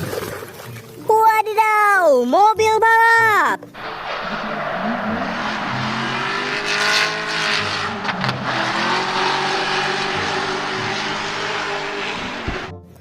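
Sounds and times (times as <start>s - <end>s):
racing car engine revving: 3.8s - 12.8s.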